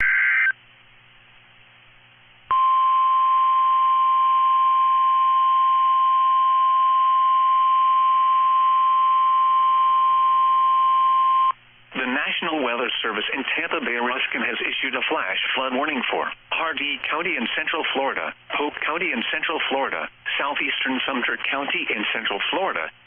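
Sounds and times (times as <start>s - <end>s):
faint radio hiss and hum: 0.0s - 3.7s, 6.3s - 23.0s
steady loud high-pitched tone: 2.5s - 11.6s.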